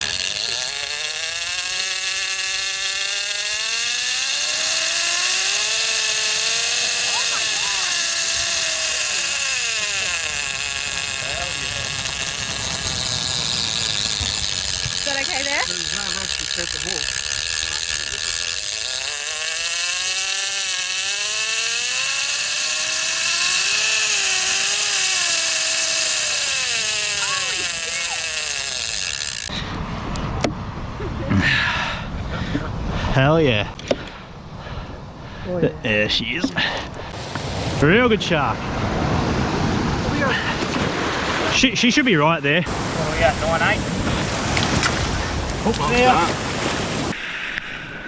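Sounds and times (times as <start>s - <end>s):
fishing reel drag screaming: 0.0s - 29.6s, 36.8s - 37.9s, 42.6s - 47.2s
wind: 0.0s - 48.0s
surf hiss: 42.7s - 48.0s.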